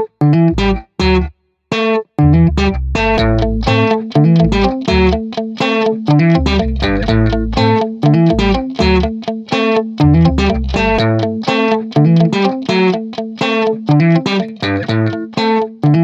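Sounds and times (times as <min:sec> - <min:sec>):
plucked guitar notes: 0:00.0 - 0:16.0
bass line: 0:00.1 - 0:01.3, 0:02.2 - 0:05.2, 0:06.1 - 0:09.1, 0:10.0 - 0:11.4.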